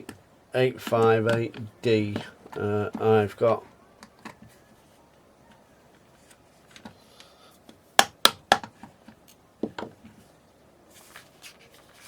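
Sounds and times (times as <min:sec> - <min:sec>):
hard objects knocking: 0:08.0 - 0:09.0, 0:09.6 - 0:10.0.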